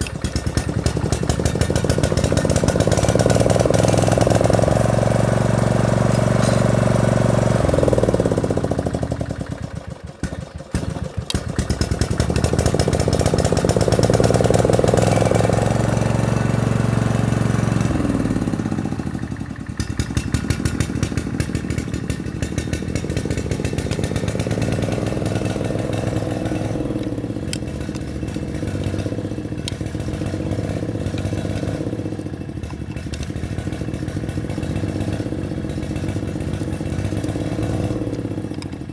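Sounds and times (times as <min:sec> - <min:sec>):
small lawn mower engine: 0:00.0 - 0:38.9.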